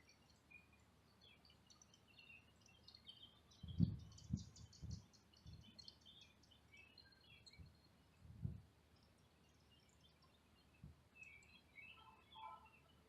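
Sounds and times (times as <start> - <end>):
birds chirping: 9.0 - 13.0.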